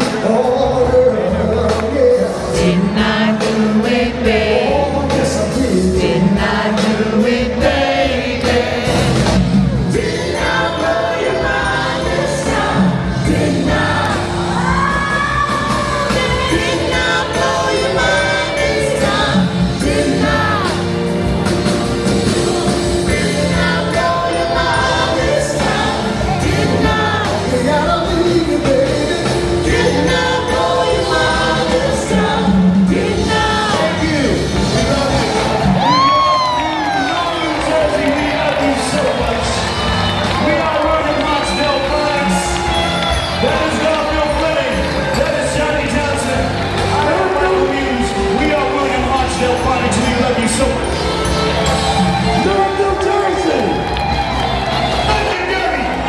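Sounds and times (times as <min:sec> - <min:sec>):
backing chorus of voices: 0:00.0 - 0:56.0
soul song with singer and band: 0:00.0 - 0:56.0.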